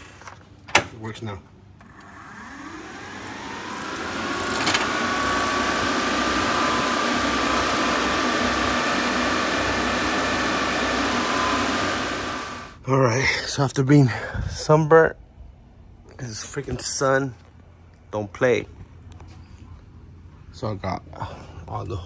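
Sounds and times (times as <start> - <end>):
electric cooling fans spinning: 1.8 - 12.8.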